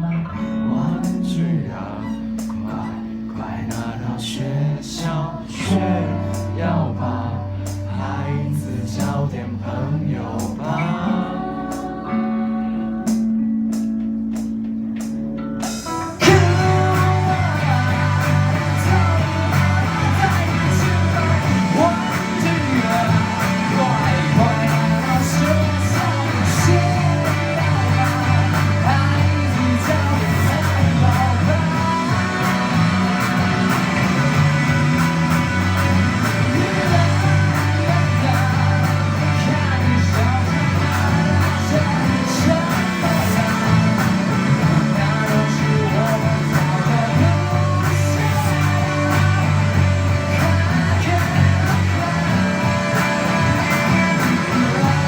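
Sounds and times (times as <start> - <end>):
person singing: 0.0 - 13.5, 15.8 - 55.0
live rock band playing: 13.0 - 55.0
held bass note: 15.8 - 55.0.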